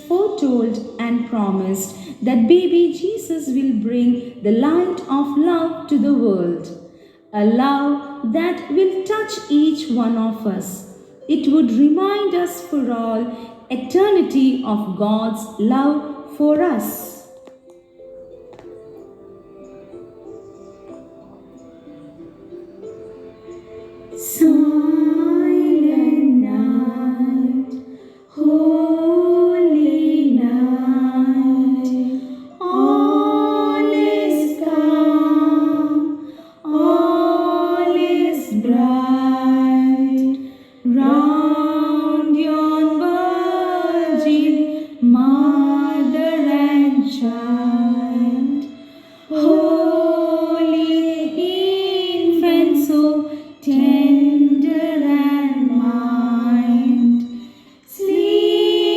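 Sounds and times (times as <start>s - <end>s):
voices singing slow song: 19.6s - 58.9s.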